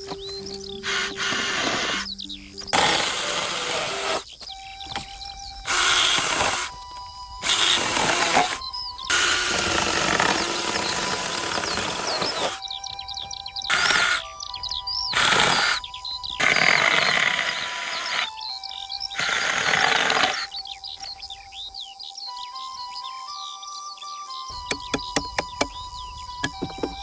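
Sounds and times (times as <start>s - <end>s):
birds chirping: 0.0s - 27.0s
scraping or sawing bamboo: 0.1s - 14.3s, 15.1s - 18.3s, 19.2s - 20.5s, 24.5s - 25.8s.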